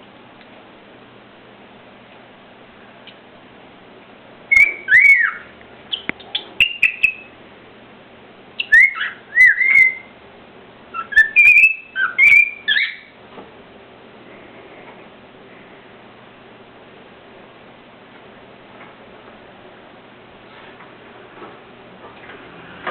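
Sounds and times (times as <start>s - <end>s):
cockatiel whistling: 4.5s - 7.3s, 8.6s - 10.1s, 10.9s - 13.2s
sharp bird clicks: 5.9s - 7.2s.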